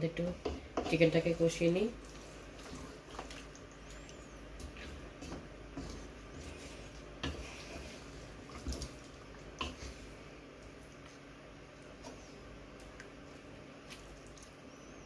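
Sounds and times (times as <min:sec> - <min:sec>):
spoon stirring in pot: 0:00.4 - 0:10.2.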